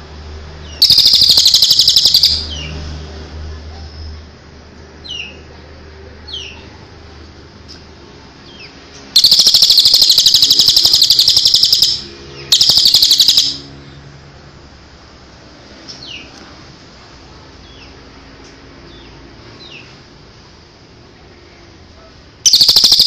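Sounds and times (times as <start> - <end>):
songbird buzzing trill: 0.8 - 2.5, 9.2 - 13.6.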